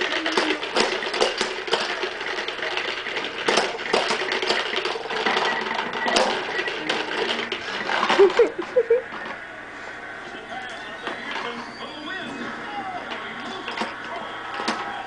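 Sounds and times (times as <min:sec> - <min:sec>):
plastic toy clicking and clattering: 0:00.0 - 0:08.6, 0:13.0 - 0:15.0.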